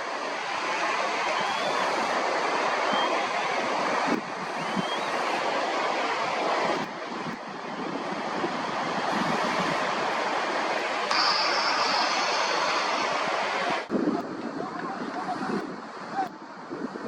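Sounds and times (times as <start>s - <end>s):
wind rushing on microphone: 3.6s - 10.4s, 12.8s - 17.0s.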